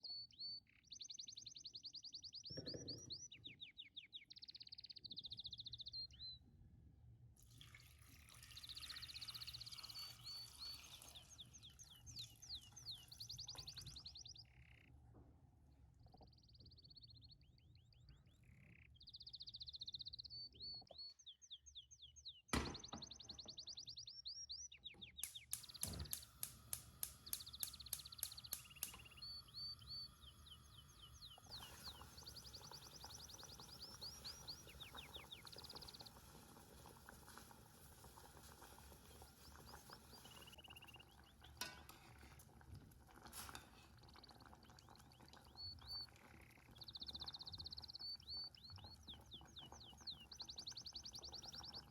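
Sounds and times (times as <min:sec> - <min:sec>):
birds chirping in trills: 0:17.0 - 0:36.2, 0:39.1 - 0:41.8, 0:44.2 - 0:51.9
fast run of clicks: 0:25.2 - 0:29.1
hiss: 0:25.2 - 0:29.4.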